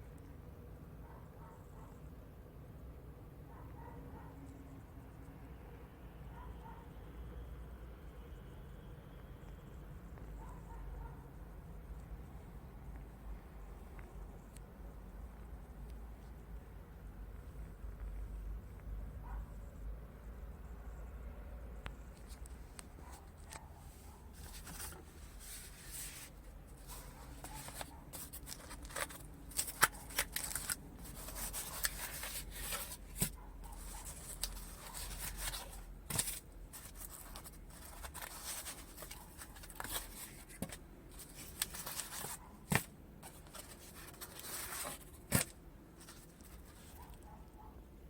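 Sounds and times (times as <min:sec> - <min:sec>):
rustling handling noises: 0:22.0 - 0:47.6.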